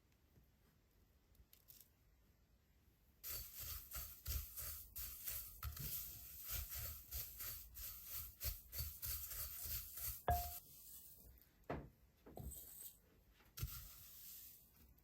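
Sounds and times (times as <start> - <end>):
rubbing or scraping strokes: 3.2 - 11.4, 12.4 - 15.0.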